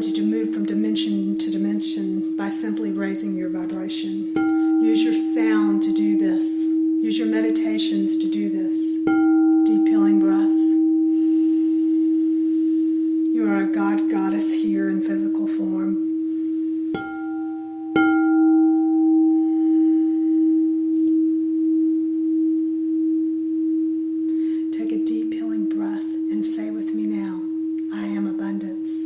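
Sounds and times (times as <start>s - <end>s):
singing bowl tone: 0.0s - 27.9s
singing bowl strike: 4.1s - 7.0s, 9.0s - 13.4s, 16.0s - 24.6s.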